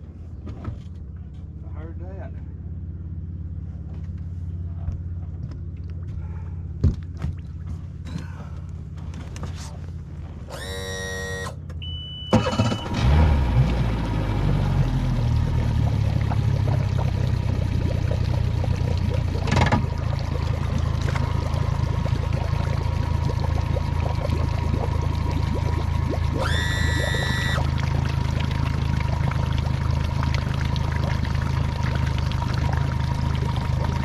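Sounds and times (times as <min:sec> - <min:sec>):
boat motor running: 0:02.5 - 0:34.0
water splashing around hull: 0:05.6 - 0:10.6, 0:12.5 - 0:34.0
short high tone: 0:26.4 - 0:27.6.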